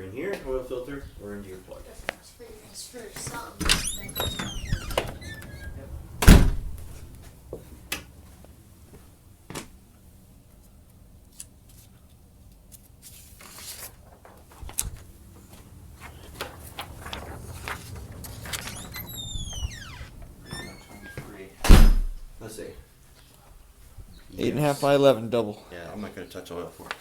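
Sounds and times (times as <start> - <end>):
rustling: 3.1 - 8.4.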